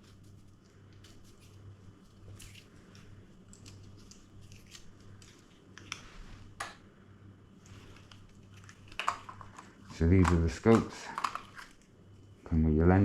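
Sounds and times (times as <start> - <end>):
packaging clicks and rustles: 7.8 - 11.9.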